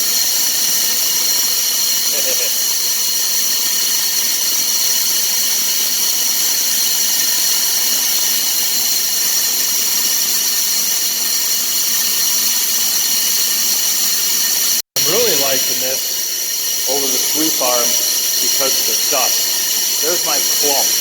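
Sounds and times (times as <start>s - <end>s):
grain vacuum hissing and whining: 0.0s - 4.6s, 14.5s - 21.0s.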